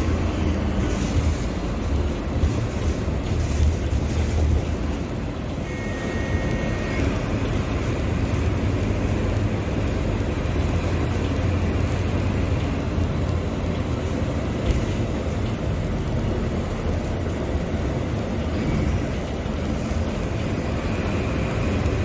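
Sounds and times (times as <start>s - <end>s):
diesel engine rumbling: 0.0s - 22.0s
short electronic beep: 5.7s - 7.0s.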